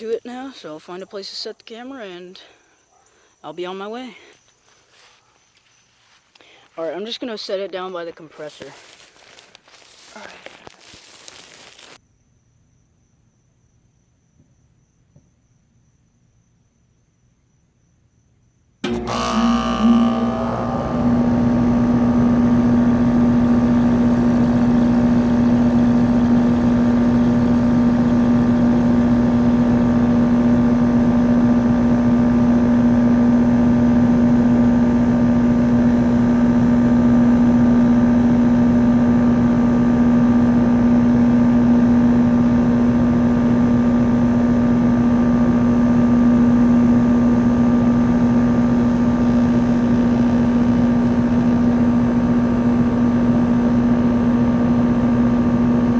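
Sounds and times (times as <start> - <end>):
compressor low hum: 18.8 - 55.9
condenser fan rushing: 18.8 - 55.9.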